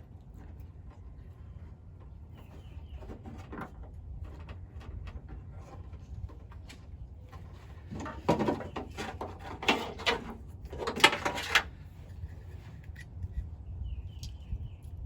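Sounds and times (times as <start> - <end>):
rustling and clicking of plastic parts: 0.2 - 13.2.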